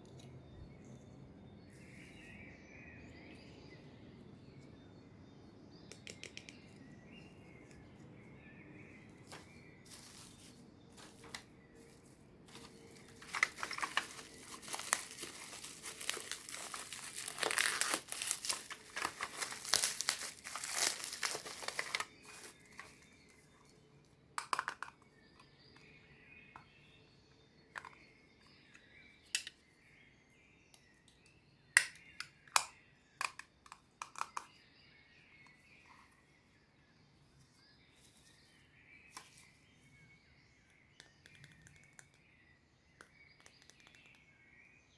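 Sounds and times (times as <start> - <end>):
packaging crinkling and tearing: 12.5 - 23.0.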